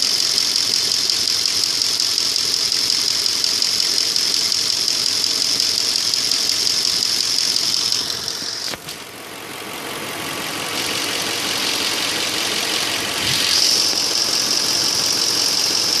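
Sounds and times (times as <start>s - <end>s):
car engine idling with knock: 0.0s - 16.0s.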